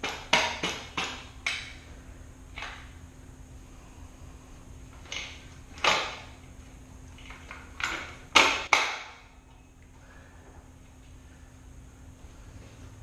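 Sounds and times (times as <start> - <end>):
tools and metal parts clanking: 7.2 - 9.1.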